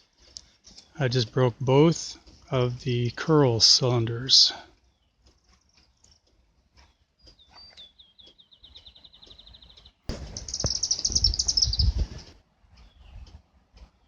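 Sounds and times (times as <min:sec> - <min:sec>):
songbird trilling: 0:07.3 - 0:13.2.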